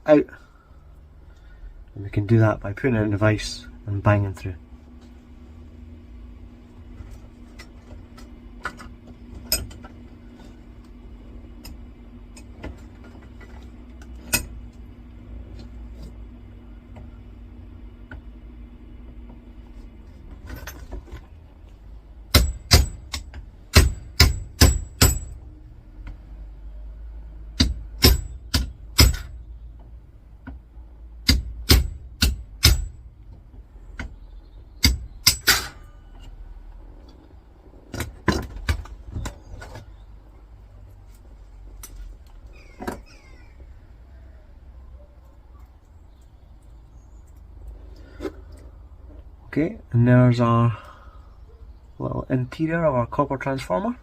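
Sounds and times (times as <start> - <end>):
hammer striking metal: 22.3 - 25.4, 27.6 - 29.4, 31.2 - 33.0, 34.8 - 35.9.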